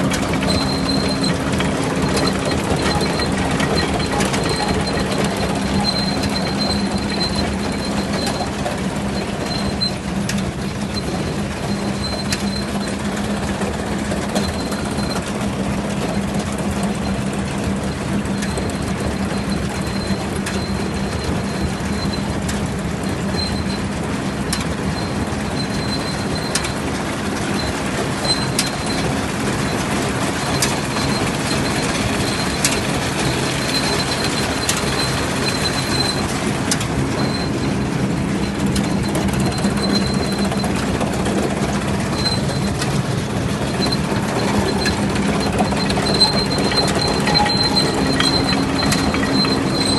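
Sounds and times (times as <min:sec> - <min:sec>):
high squeal: 0:00.0 - 0:08.6, 0:30.4 - 0:49.9
baler chains and rollers clattering: 0:00.0 - 0:49.9
tractor engine hum: 0:00.0 - 0:49.9
scattered clicks: 0:30.4 - 0:49.9.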